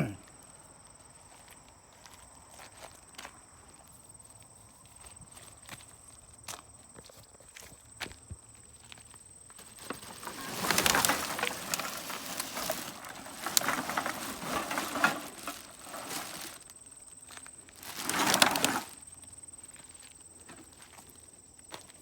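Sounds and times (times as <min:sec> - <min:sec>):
plastic bags rustling and crackling: 0:09.5 - 0:19.1
bottles and cans shaken: 0:09.8 - 0:16.6, 0:17.8 - 0:19.0.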